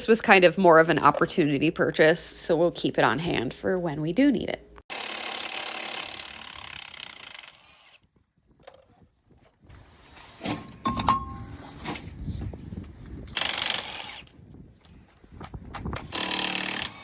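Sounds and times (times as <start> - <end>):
metal clanking and rattling: 10.3 - 12.1
ringing metal strike: 10.9 - 11.6.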